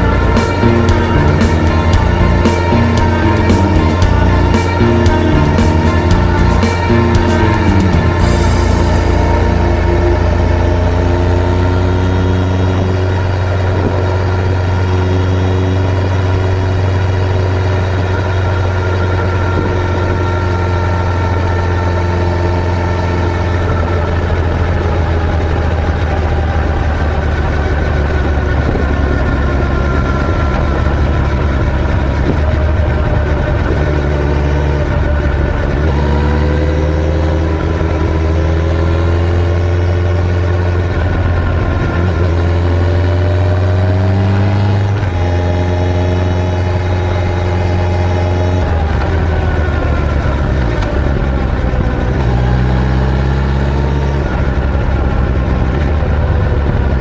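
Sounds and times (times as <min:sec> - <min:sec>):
steady low rumble: 0:00.0 - 0:35.8
motorcycle engine running: 0:00.0 - 0:57.0.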